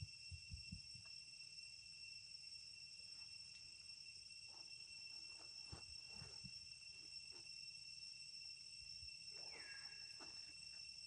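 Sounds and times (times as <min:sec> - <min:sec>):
insects droning: 0:00.0 - 0:11.0
faint rustles and soft knocks: 0:04.5 - 0:06.7.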